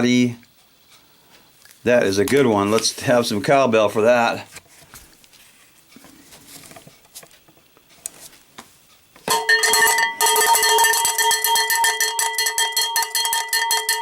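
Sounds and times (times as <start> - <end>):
cowbell struck rhythmically: 9.3 - 14.0.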